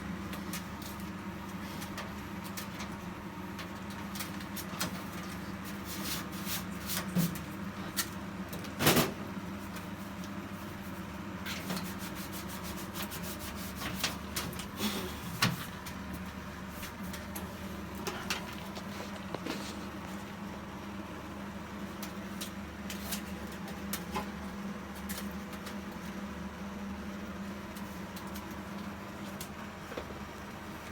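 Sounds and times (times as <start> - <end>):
steady low hum: 9.2 - 30.9.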